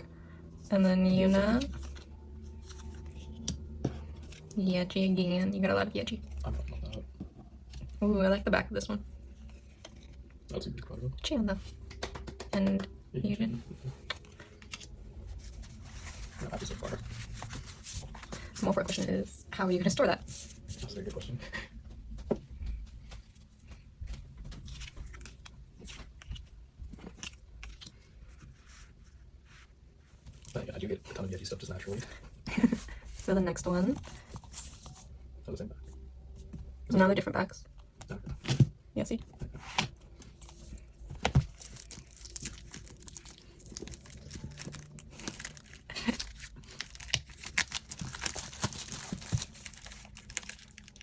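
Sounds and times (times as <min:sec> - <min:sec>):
paper cards tapping and rustling: 0:11.7 - 0:13.0, 0:22.1 - 0:28.0, 0:39.4 - 0:51.0.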